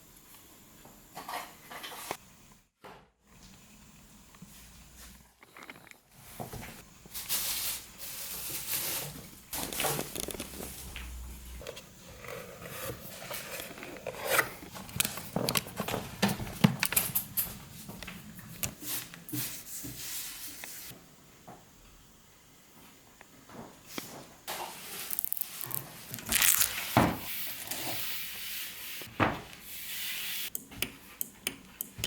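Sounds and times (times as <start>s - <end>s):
rustling and rubbing: 7.1s - 11.0s, 24.5s - 30.4s.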